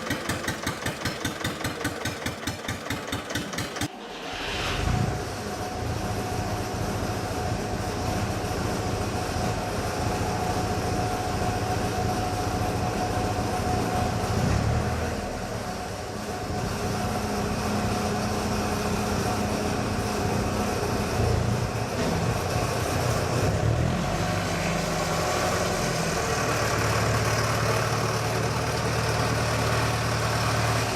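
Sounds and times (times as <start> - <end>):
high whine: 3.9 - 7.8
diesel engine running: 4.8 - 30.9.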